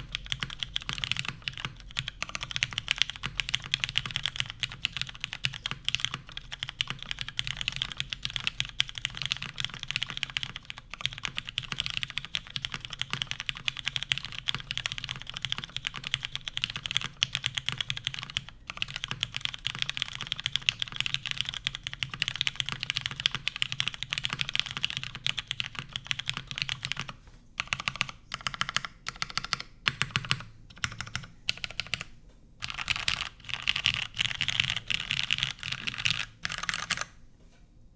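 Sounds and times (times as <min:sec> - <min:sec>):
typing on mechanical keyboard: 0:00.0 - 0:37.2.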